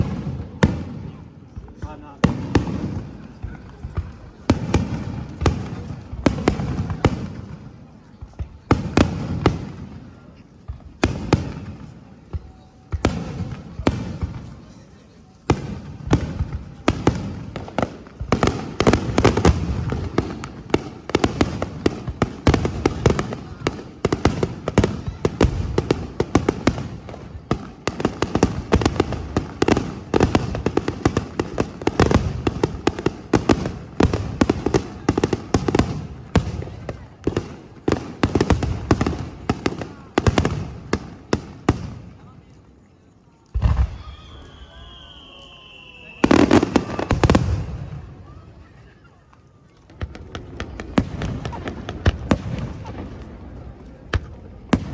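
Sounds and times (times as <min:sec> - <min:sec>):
fireworks booming: 0:00.0 - 0:14.7, 0:15.4 - 0:42.2, 0:43.5 - 0:48.7, 0:49.8 - 0:54.9.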